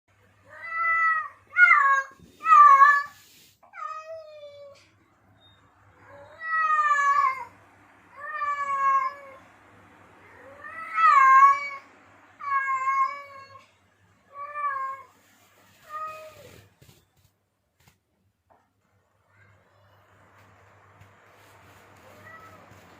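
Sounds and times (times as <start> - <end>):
cat meowing: 22.0 - 22.8.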